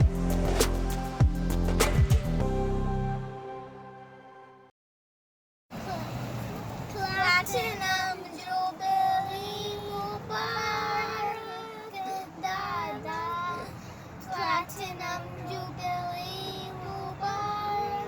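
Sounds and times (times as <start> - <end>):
child singing long notes: 7.1 - 18.0.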